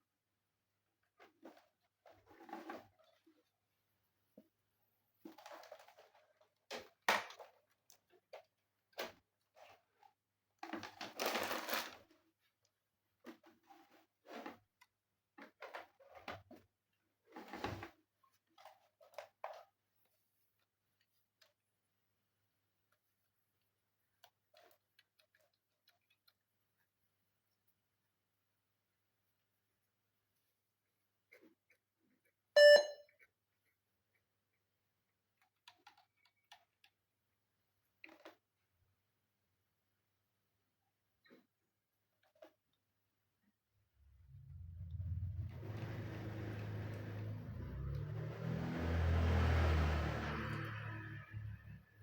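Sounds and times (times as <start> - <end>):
short electronic beep: 32.6 - 33.0.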